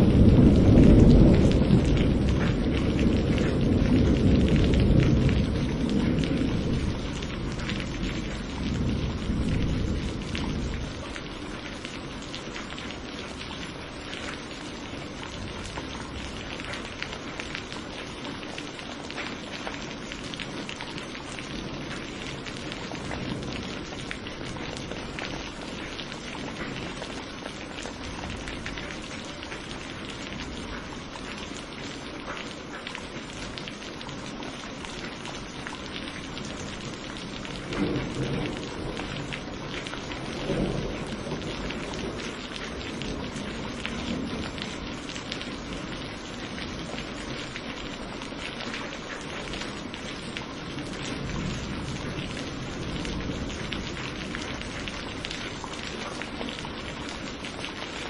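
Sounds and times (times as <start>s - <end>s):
thunder rolling: 0.0s - 11.0s, 37.4s - 44.8s
heavy rain pattering: 0.0s - 58.0s.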